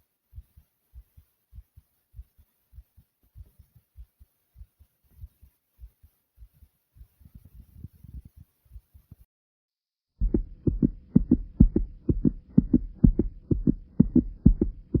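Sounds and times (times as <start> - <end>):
faint steady hum: 10.2 - 15.0
fast heartbeat thumps: 10.2 - 15.0.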